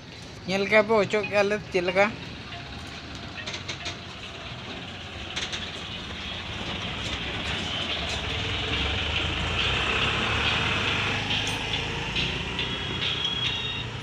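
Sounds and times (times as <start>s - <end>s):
vehicle passing by: 4.3s - 14.0s.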